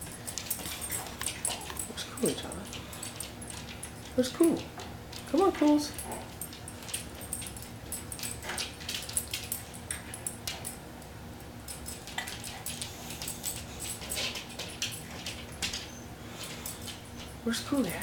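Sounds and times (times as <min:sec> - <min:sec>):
dog claws ticking on laminate floor: 0:00.0 - 0:10.8.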